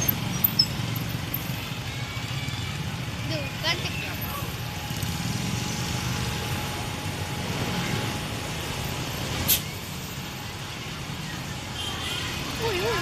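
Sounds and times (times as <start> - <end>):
buses passing: 0.0 - 13.0.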